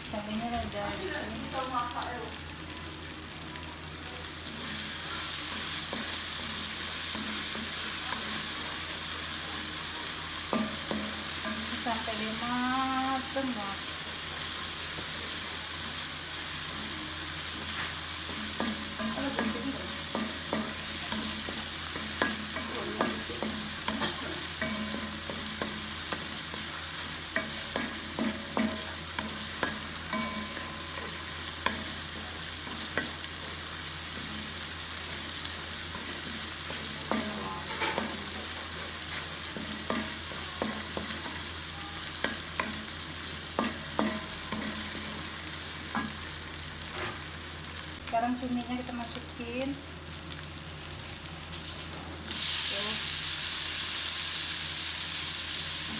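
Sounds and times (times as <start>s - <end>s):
chillies sizzling in oil: 0.0s - 55.9s
spatula scraping pan: 17.5s - 34.6s, 35.9s - 45.3s.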